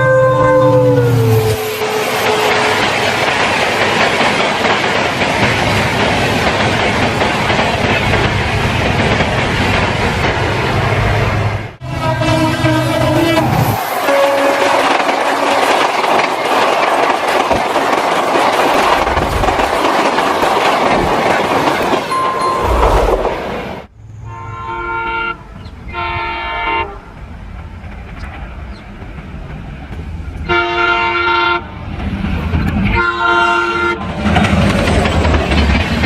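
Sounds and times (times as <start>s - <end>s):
locomotive horn blasts: 0.0s - 2.7s, 11.8s - 15.5s, 24.2s - 27.0s, 30.4s - 31.6s, 32.9s - 34.0s
train wheels rushing on rails: 1.0s - 11.8s, 12.5s - 23.9s, 27.1s - 36.0s.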